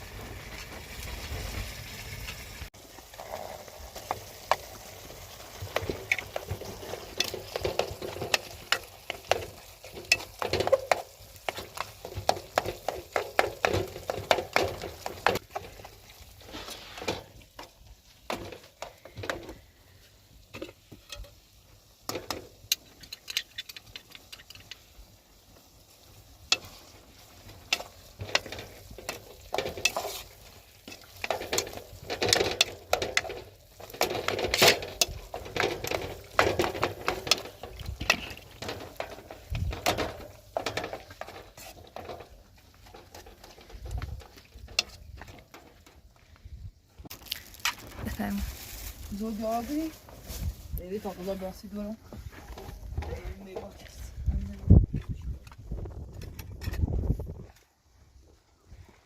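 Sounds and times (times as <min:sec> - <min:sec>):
utensil scraping against a pot: 0:03.1 - 0:17.5, 0:26.4 - 0:44.0.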